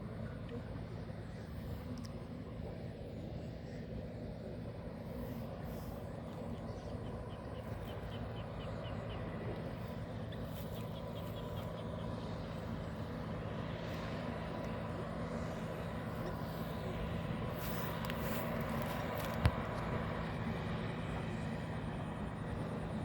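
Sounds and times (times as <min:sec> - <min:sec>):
farm machine engine running: 0:06.6 - 0:23.0.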